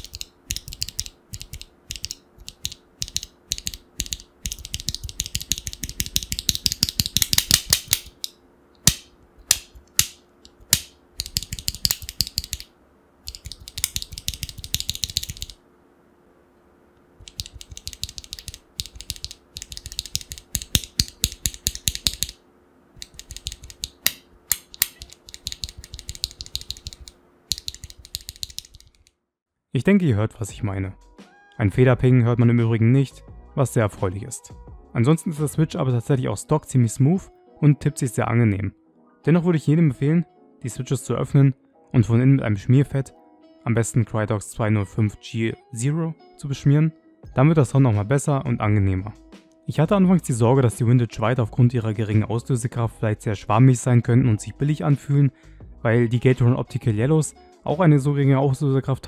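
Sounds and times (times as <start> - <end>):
mechanical keyboard typing: 0.0 - 8.3, 9.5 - 12.7, 13.3 - 15.6, 17.2 - 22.4, 23.0 - 29.1.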